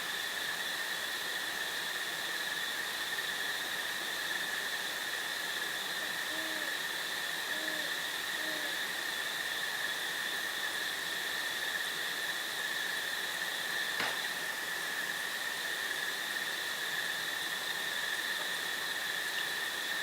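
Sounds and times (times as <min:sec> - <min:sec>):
crickets chirping: 0:00.0 - 0:20.0
owl hooting: 0:06.0 - 0:09.0
sharp click: 0:14.0 - 0:14.3.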